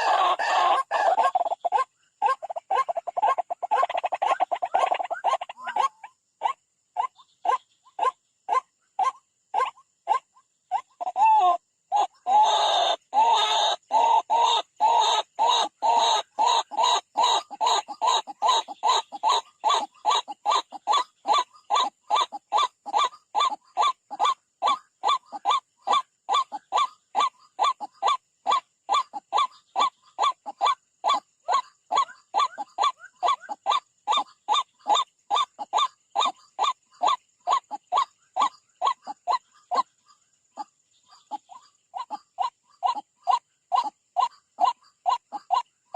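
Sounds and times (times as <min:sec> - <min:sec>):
waterhen monotonous honking call: 0:00.0 - 0:02.4.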